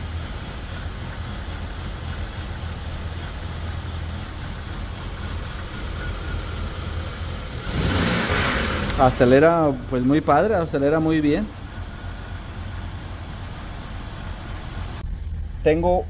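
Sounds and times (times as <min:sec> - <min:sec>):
car engine idling roughly: 0:00.0 - 0:16.0.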